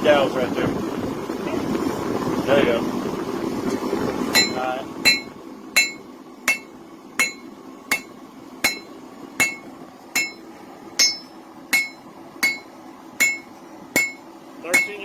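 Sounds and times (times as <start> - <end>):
hammer striking metal on anvil: 4.3 - 15.0.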